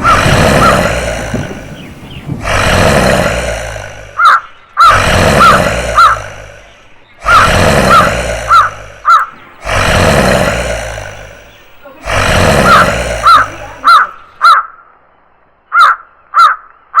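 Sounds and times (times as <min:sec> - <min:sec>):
deep rumbling whooshes: 0:00.0 - 0:14.4
crows cawing: 0:04.1 - 0:09.8, 0:12.6 - 0:14.9, 0:15.7 - 0:17.0.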